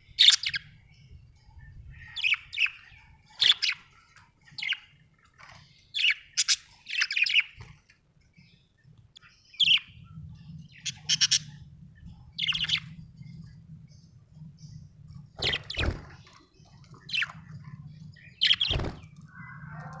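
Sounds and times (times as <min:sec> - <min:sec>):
budgerigars chirping: 0:00.2 - 0:00.7, 0:01.9 - 0:03.9, 0:06.0 - 0:07.6, 0:09.5 - 0:09.9, 0:10.7 - 0:11.6, 0:12.4 - 0:13.0, 0:17.1 - 0:19.1
faint low hum: 0:07.6 - 0:20.0.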